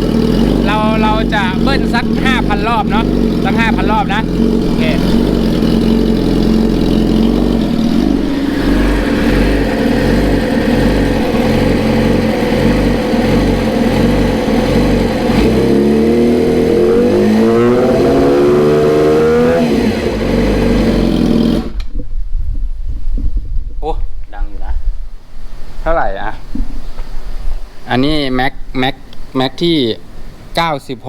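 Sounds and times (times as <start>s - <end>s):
motorcycle engine idling and revving: 0.0s - 22.1s.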